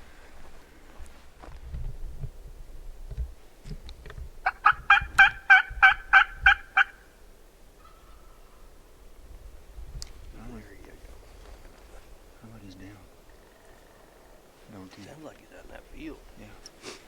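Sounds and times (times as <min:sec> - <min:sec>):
turkey call hen yelps: 0:04.4 - 0:07.1, 0:07.8 - 0:08.7.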